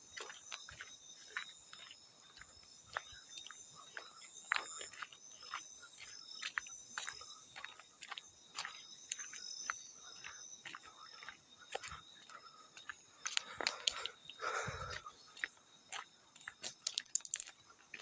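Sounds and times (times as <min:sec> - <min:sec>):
crickets chirping: 0:00.0 - 0:18.0
water splashes and drips: 0:12.8 - 0:18.0.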